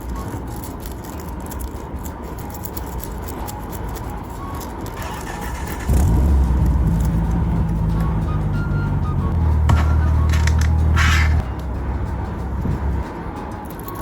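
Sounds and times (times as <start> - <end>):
car engine running: 5.0 - 13.2
deep engine rumble: 5.0 - 13.6.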